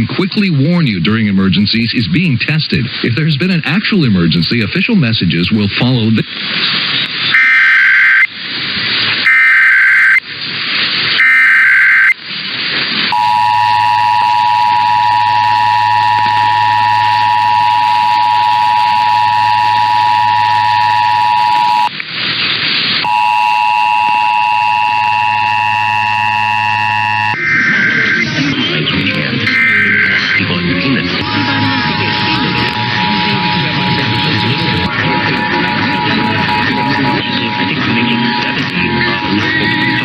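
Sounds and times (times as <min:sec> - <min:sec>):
radio hiss: 0:00.0 - 0:40.0
digital header tone bursts: 0:13.1 - 0:21.9, 0:23.0 - 0:27.6, 0:31.2 - 0:40.0
steady two-tone attention signal: 0:13.1 - 0:21.9, 0:23.0 - 0:27.4, 0:29.5 - 0:40.0.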